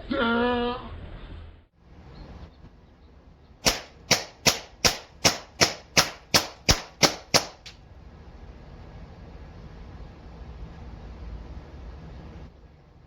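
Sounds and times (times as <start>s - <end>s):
air rifle shots: 3.6s - 7.8s.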